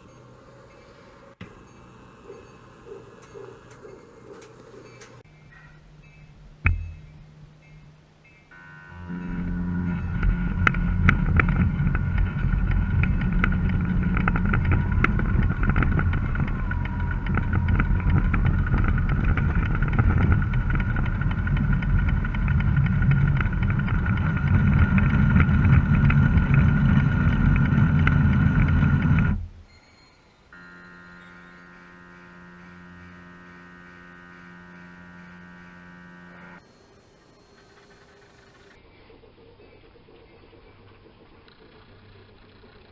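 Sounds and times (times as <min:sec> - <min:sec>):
scattered clicks: 0:02.9 - 0:05.2, 0:09.3 - 0:29.4
low rumble: 0:06.4 - 0:29.7
model locomotive motor whine: 0:08.5 - 0:29.4, 0:30.5 - 0:38.9, 0:40.4 - 0:42.9.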